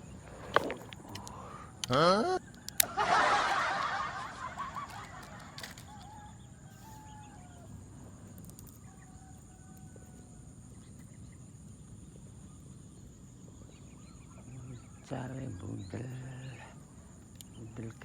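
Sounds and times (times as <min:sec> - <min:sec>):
chickens calling: 0:00.0 - 0:18.0
rooster crowing: 0:02.6 - 0:07.9, 0:08.8 - 0:10.6.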